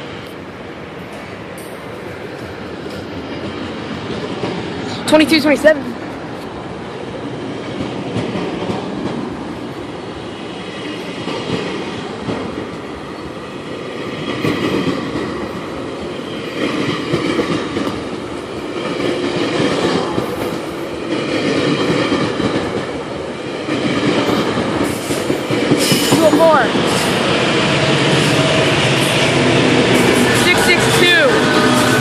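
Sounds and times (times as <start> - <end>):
train cars rolling past: 0.0 - 32.0
train wheels clacking: 13.6 - 32.0.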